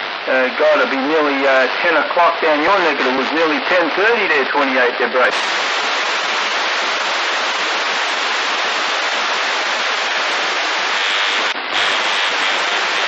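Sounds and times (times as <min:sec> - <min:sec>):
radio static hiss: 0:00.0 - 0:13.0.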